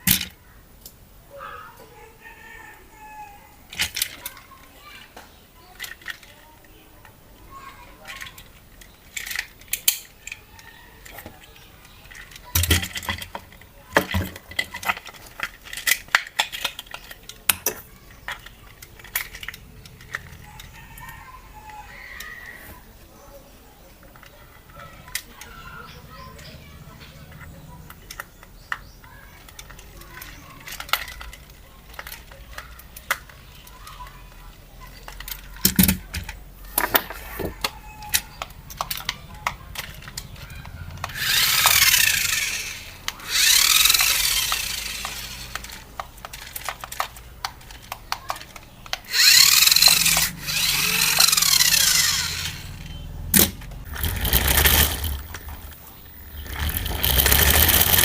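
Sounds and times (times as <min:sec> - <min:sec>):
clicking and knocking of toy handling: 0:00.0 - 0:01.0, 0:03.7 - 0:22.9, 0:23.9 - 0:58.0
electric motors and gears whirring: 0:35.2 - 0:58.0.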